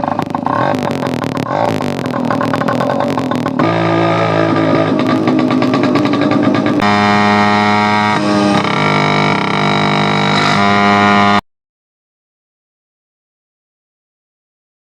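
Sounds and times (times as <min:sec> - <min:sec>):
moped engine running loud: 0:00.0 - 0:11.4.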